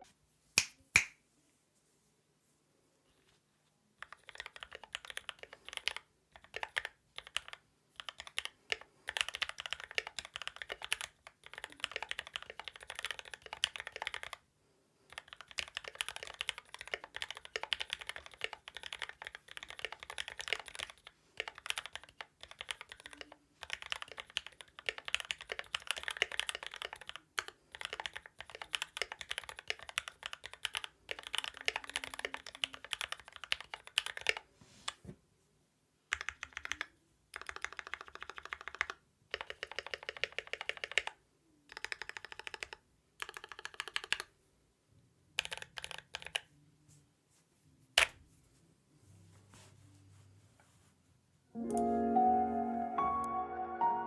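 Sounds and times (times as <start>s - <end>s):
mechanical keyboard typing: 4.0s - 14.4s, 15.1s - 34.4s, 36.1s - 44.3s, 45.4s - 46.5s.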